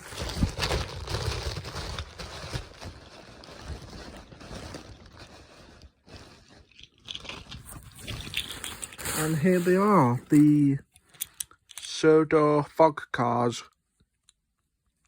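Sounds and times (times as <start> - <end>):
packaging crinkling: 0.0 - 10.7.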